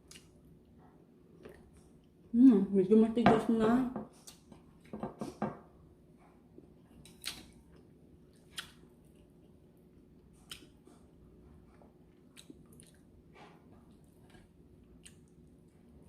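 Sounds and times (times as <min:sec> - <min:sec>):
chewing: 0:12.1 - 0:13.1, 0:13.9 - 0:15.7.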